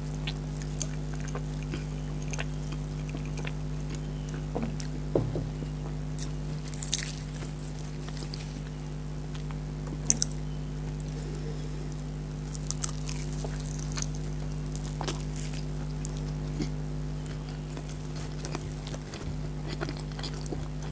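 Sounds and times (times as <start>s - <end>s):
biting and chewing food: 0.0s - 20.9s
steady low hum: 0.0s - 20.9s
sharp crunches: 4.6s - 8.7s.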